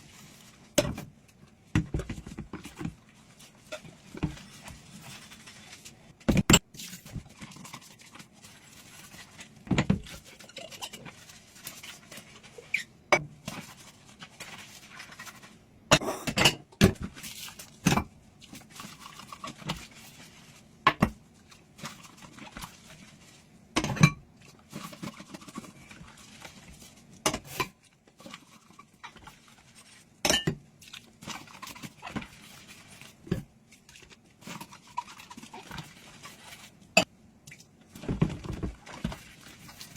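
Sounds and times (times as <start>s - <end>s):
dishes clinking and knocking: 15.9s - 17.0s, 23.8s - 24.2s, 30.3s - 30.6s.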